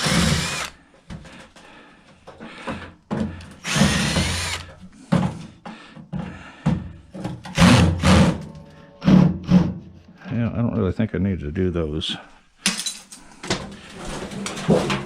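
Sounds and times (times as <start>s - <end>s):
power drill bursts: 0.0s - 0.8s, 3.6s - 4.7s.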